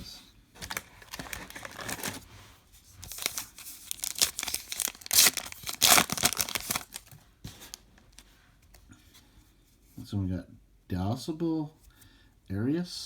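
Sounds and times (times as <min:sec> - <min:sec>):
wrapper tearing and crinkling: 0:00.6 - 0:02.2, 0:03.0 - 0:07.2.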